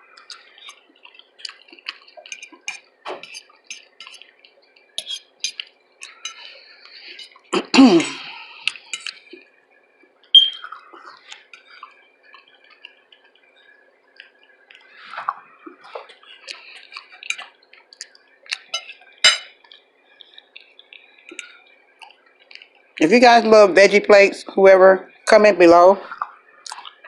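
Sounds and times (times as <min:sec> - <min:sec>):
soft chewing: 0:00.0 - 0:07.7, 0:08.3 - 0:23.0, 0:26.0 - 0:27.0
cutlery clinking on plate: 0:02.3 - 0:04.2, 0:08.7 - 0:09.2, 0:18.6 - 0:19.6.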